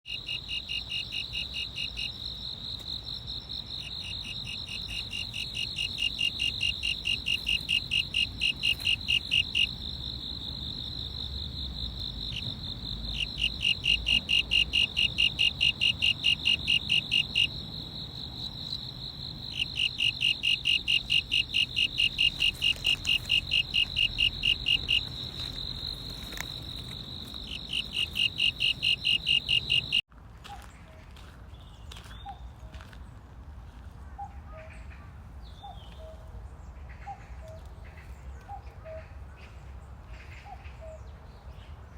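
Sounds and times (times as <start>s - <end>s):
insect high trill: 0.1s - 30.0s
insect pulsed chirps: 0.1s - 30.0s.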